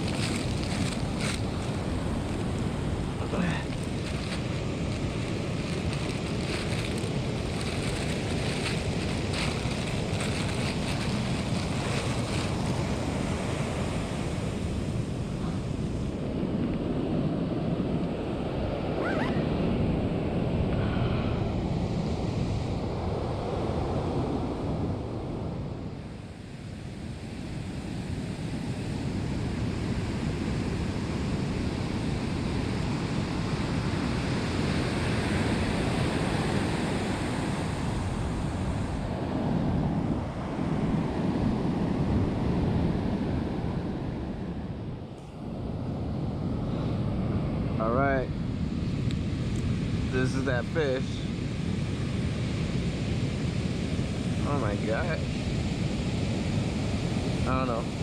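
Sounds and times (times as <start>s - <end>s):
wind buffeting microphone: 0.0s - 26.5s
ocean surf breaking on beach: 0.0s - 58.0s.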